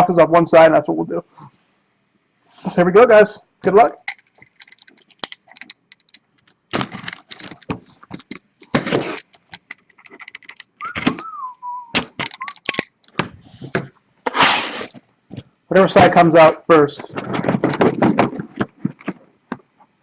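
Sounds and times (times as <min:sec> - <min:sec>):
cardboard and packing tape tearing: 0:06.7 - 0:11.3, 0:12.0 - 0:13.2, 0:14.3 - 0:15.0
sharp crackles and clicks: 0:12.0 - 0:13.2.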